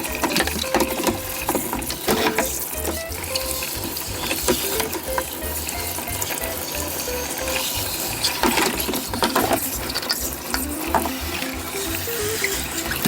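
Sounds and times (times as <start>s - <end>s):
light background music: 0.0s - 13.0s
tap water running and splashing: 0.0s - 13.0s.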